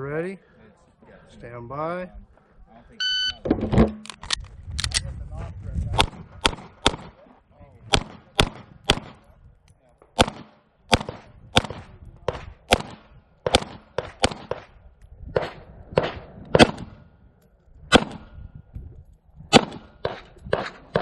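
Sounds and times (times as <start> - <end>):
pistol shots: 6.0 - 7.2, 7.9 - 9.2, 10.1 - 14.8, 15.4 - 17.0, 17.9 - 18.3, 19.5 - 21.0.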